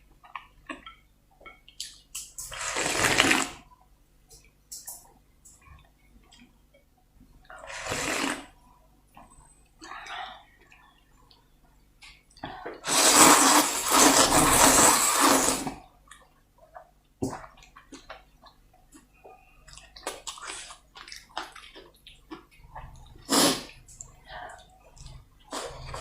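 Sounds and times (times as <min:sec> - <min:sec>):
noodle soup slurping: 0:02.4 - 0:03.6, 0:07.6 - 0:08.6, 0:12.8 - 0:15.8, 0:22.7 - 0:24.1, 0:25.5 - 0:26.0
wet chewing smacks: 0:19.6 - 0:25.9.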